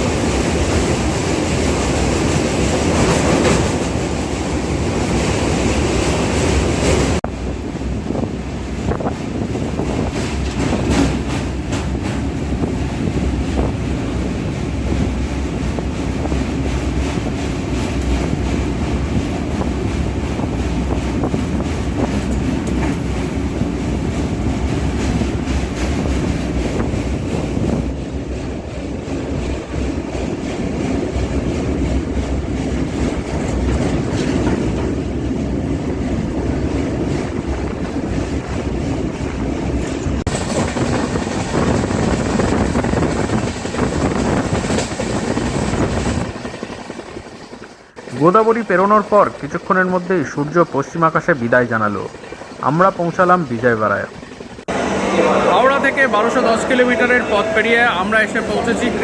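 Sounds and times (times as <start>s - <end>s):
train rumble: 0.0s - 59.0s
wheels clicking over rail joints: 8.8s - 51.3s.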